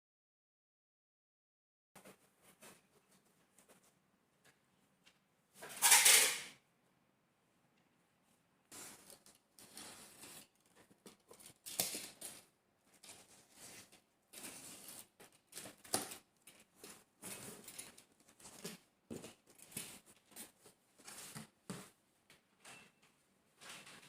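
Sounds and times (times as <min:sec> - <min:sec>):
packaging rustling and scraping: 0:08.7 - 0:22.0.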